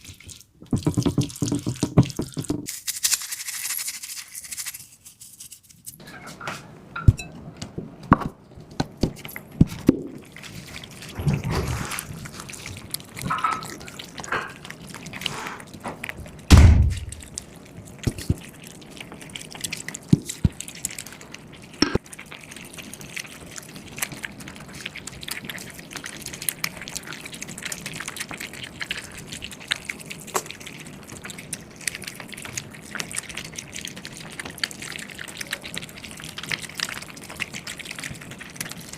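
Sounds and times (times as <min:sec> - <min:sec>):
liquid pouring and dripping: 0:00.0 - 0:02.8, 0:09.0 - 0:38.9
water trickling: 0:16.1 - 0:38.9
heavy thump: 0:16.5 - 0:17.2.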